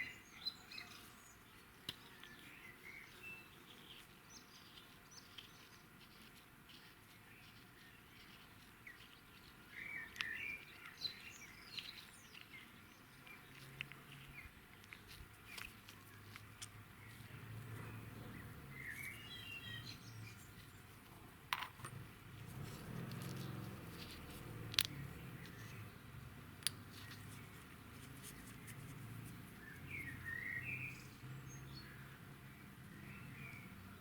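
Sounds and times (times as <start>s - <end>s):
birds chirping: 0.0s - 34.0s
low steady rumble: 16.8s - 34.0s.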